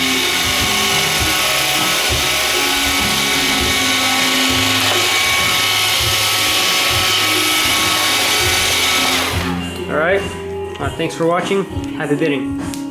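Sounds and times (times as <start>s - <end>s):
robot vacuum whirring: 0.0s - 9.8s.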